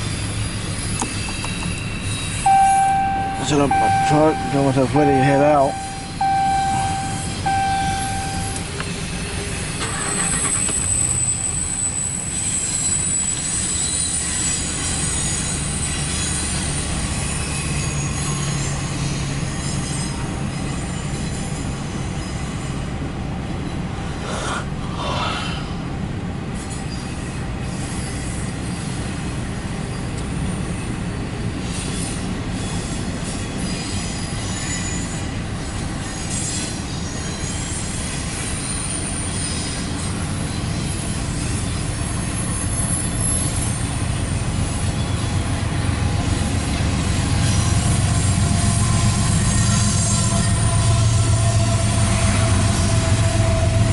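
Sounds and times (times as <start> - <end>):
freight train rumbling past: 0.0 - 9.8, 10.9 - 53.9
high-pitched wheel squeal: 0.0 - 22.9, 31.6 - 45.4, 46.2 - 53.9
short steady tone: 2.5 - 8.8.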